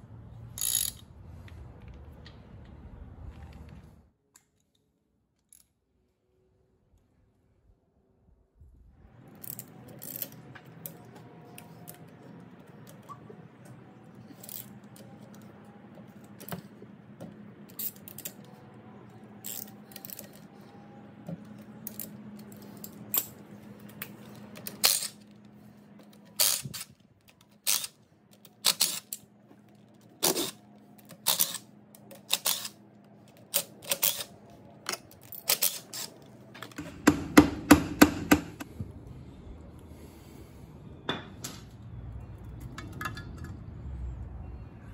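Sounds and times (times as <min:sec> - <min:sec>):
low hum: 0:06.2 - 0:44.9
tools clinking against metal: 0:42.6 - 0:43.6.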